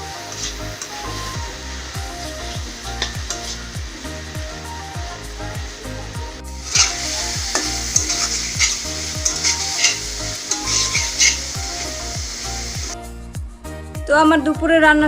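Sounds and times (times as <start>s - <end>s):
food sizzling in a pan: 0.0s - 13.0s
background music with steady beat: 0.0s - 15.0s
spatula scraping a pan: 0.3s - 1.4s, 6.6s - 12.7s.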